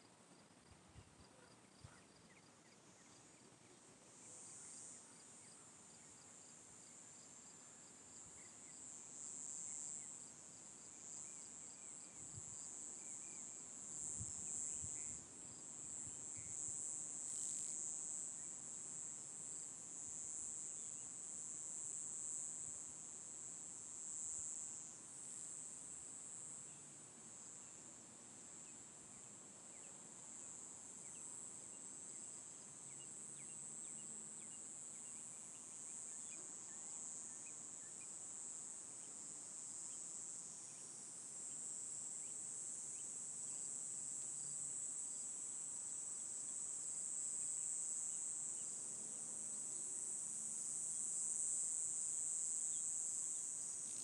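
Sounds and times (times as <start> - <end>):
insects droning: 1.3 - 54.0.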